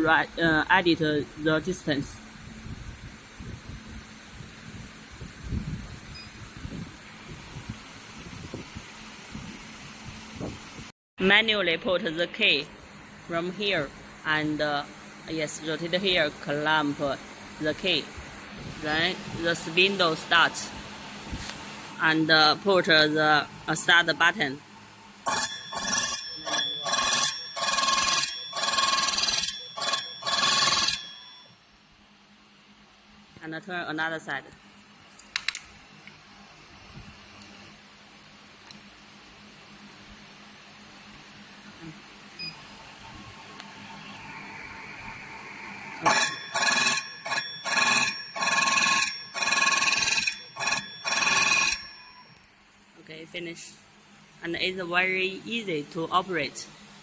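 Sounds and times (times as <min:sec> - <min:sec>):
key cutting machine metallic ringing: 0:25.3 - 0:31.5, 0:46.1 - 0:52.4.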